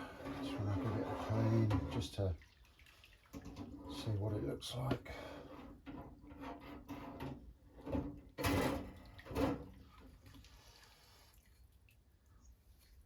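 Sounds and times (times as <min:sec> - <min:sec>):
water sounds: 0:00.0 - 0:05.4.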